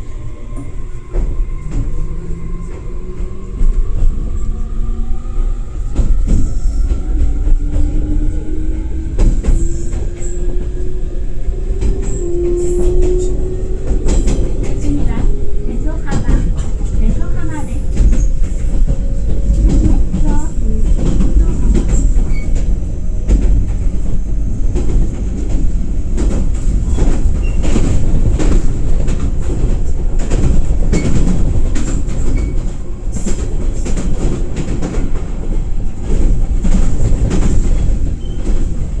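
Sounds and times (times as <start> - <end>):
freight train rumbling: 0.0 - 39.0.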